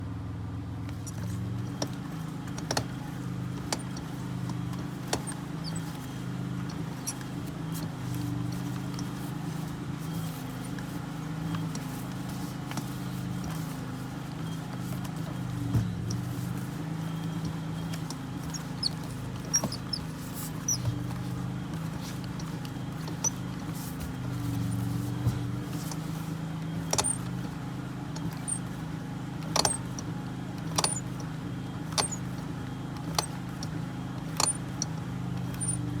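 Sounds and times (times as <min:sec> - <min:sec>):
car engine humming: 0:00.1 - 0:36.0
steering column knocking: 0:00.9 - 0:07.9, 0:29.5 - 0:32.4, 0:33.0 - 0:35.9.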